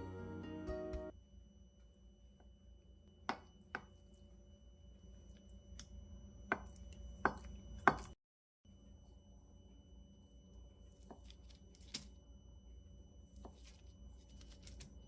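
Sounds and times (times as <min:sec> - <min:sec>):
knife chopping on cutting board: 0:06.5 - 0:08.2.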